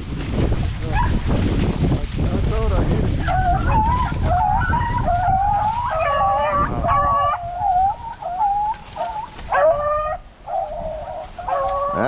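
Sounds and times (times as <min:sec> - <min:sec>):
dogs baying: 0:03.2 - 0:12.0.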